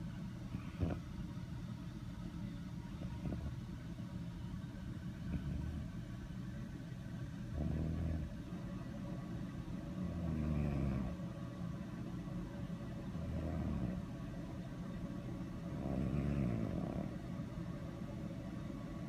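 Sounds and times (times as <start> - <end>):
pet snoring: 0.5 - 1.1, 3.0 - 3.6, 5.2 - 6.0, 7.4 - 8.5, 9.9 - 11.2, 13.1 - 14.1, 15.7 - 17.3.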